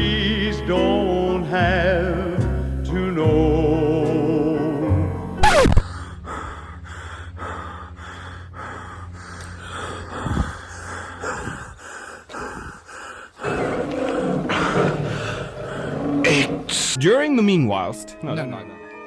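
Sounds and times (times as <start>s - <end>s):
dog panting: 6.0s - 15.9s.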